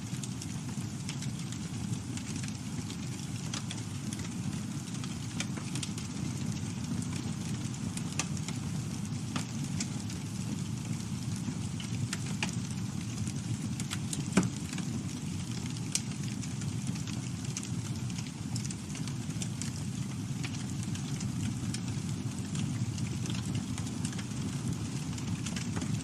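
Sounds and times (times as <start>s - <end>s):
fire crackling: 0.0s - 26.0s
low rumble of flames: 0.0s - 26.0s
fire popping: 0.1s - 26.0s.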